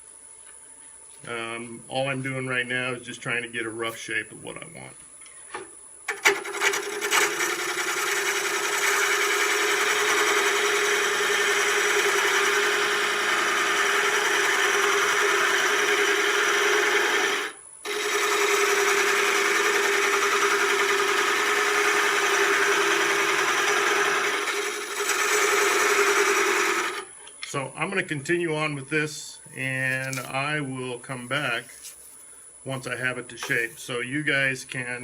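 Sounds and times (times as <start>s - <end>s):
lathe hum: 6.1s - 27.1s
lathe tool scraping wood: 6.1s - 27.1s.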